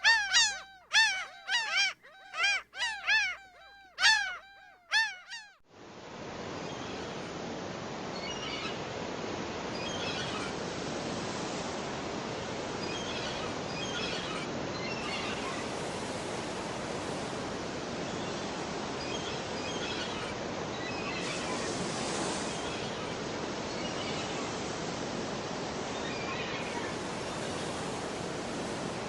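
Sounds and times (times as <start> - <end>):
faint high chirps: 0.0 - 5.6.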